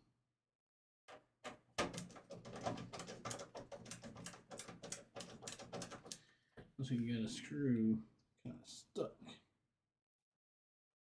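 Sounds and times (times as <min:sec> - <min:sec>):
screwdriver clicking and scraping: 0:02.0 - 0:06.2.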